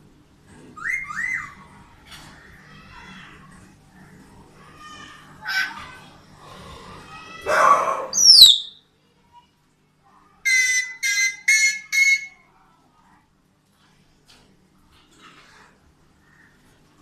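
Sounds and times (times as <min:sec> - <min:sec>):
bird calls and whistles: 0:00.8 - 0:01.6, 0:08.2 - 0:08.8.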